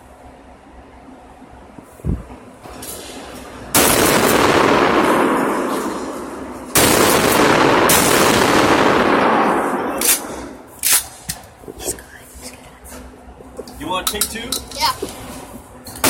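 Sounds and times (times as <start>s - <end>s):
shotgun blasts: 3.7s - 10.6s.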